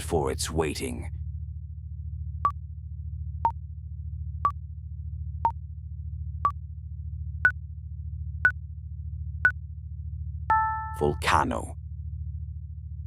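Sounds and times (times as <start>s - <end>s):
low pulsing synth drone: 1.0s - 13.0s
countdown timer beeps: 10.5s - 11.5s.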